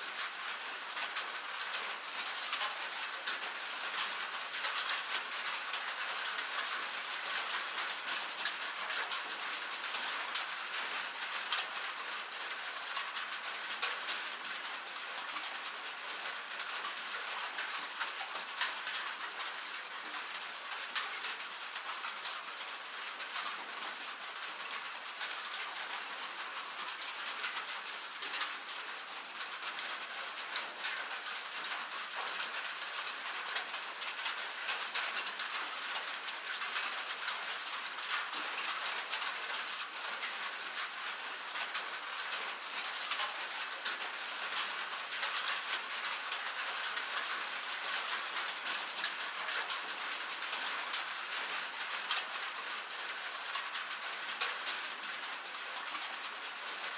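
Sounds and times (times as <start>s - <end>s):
rain on a metal roof: 0.0s - 56.9s.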